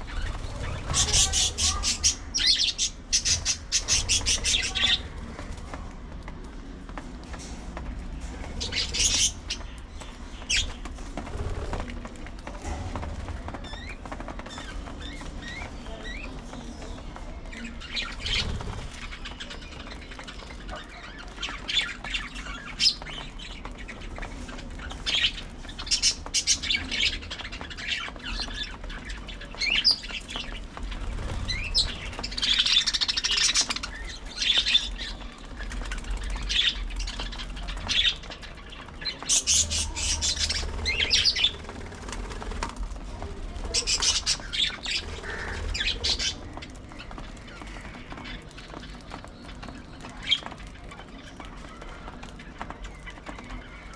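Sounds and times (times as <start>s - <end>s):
budgerigars chirping and squawking: 0.0s - 5.5s, 8.4s - 11.5s, 13.6s - 42.4s, 43.0s - 52.2s.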